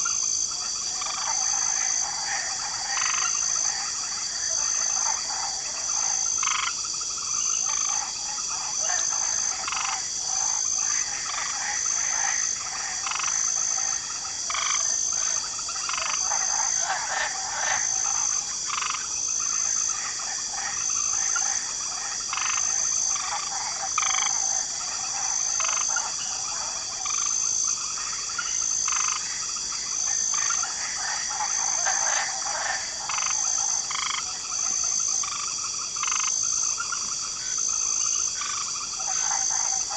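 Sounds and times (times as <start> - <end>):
crickets droning: 0.0 - 39.9
frogs croaking: 0.0 - 39.9.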